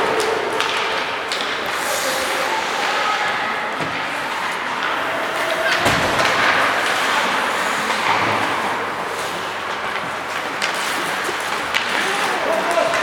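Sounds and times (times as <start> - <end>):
sticks clacking on puck: 0.0 - 1.8, 7.8 - 13.0
skate and rink noise: 0.0 - 13.0.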